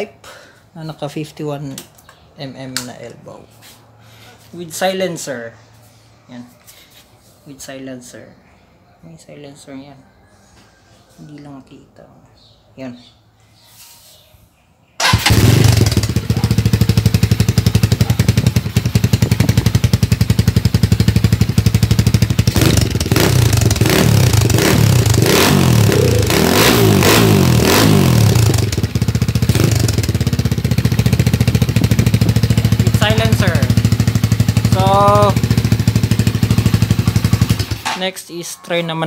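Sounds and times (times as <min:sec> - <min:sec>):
motorcycle engine revving: 0:15.0 - 0:37.9.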